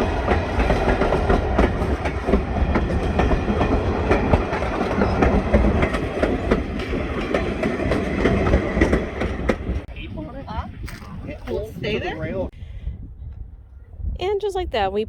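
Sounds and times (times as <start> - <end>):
wheels clacking over rail joints: 0.0 - 10.4
train cars rumbling past: 0.0 - 12.6.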